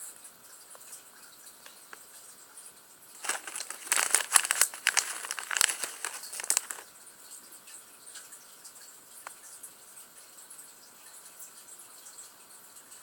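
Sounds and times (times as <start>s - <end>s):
plastic packaging crinkling: 3.2s - 6.9s.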